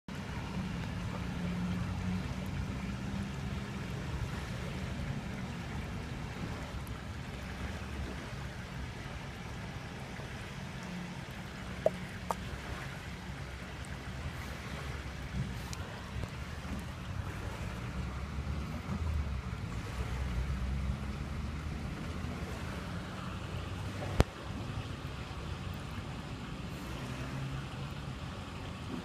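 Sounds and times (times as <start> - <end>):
water noise: 0.1 - 29.0.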